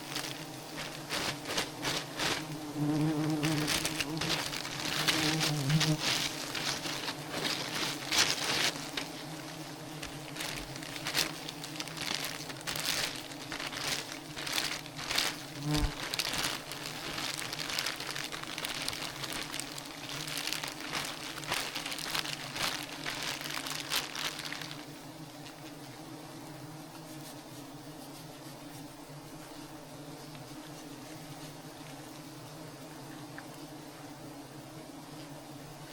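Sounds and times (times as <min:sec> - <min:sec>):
crackling and rustling: 0:00.0 - 0:26.0
bees buzzing: 0:00.0 - 0:26.9.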